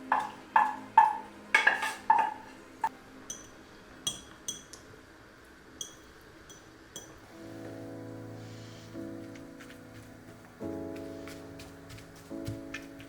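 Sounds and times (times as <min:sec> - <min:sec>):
utensils clinking against dishes: 0:00.0 - 0:02.6.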